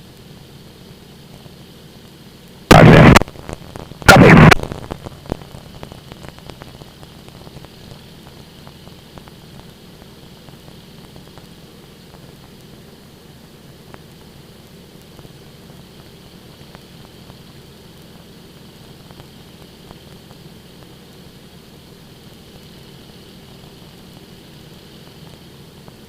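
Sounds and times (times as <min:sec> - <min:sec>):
faint crackles: 0:00.0 - 0:26.0
radio intercom hiss: 0:02.7 - 0:06.5
static bursts: 0:02.7 - 0:12.5.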